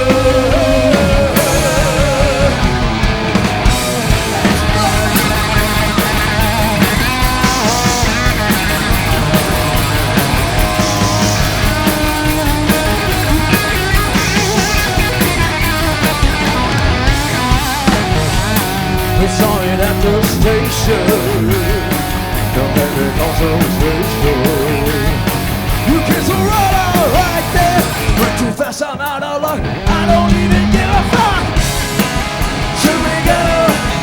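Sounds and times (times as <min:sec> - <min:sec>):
lead guitar bending notes: 0:00.0 - 0:28.4
hard rock band playing: 0:00.0 - 0:34.0.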